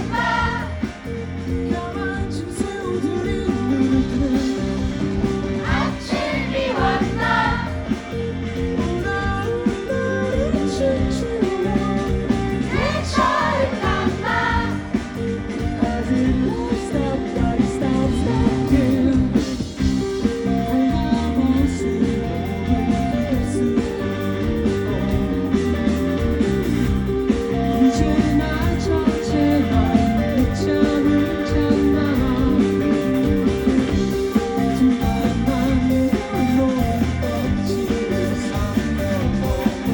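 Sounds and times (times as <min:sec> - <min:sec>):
rock band playing live: 0:00.0 - 0:39.9
person singing: 0:27.6 - 0:33.8.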